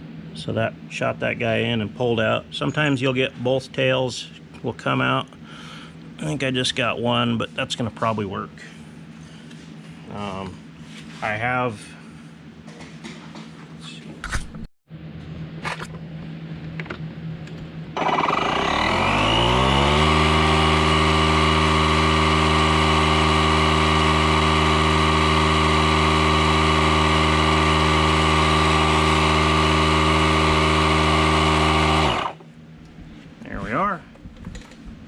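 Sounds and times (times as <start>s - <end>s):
tire inflator compressor running: 18.0s - 32.5s.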